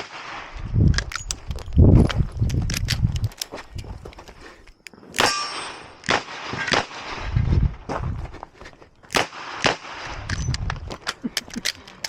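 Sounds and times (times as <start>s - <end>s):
ringing metallic clang: 5.2s - 6.1s.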